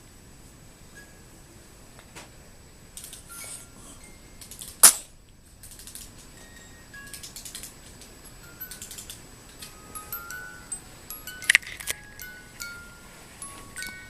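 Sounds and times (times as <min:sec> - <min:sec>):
baby sneezing: 0:04.8 - 0:05.1
faint clicks and rustles: 0:07.1 - 0:14.0.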